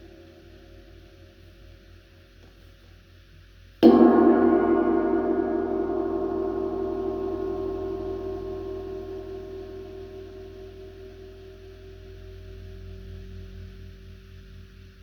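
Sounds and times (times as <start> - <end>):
cymbal struck with mallet ringing: 3.8 - 13.0.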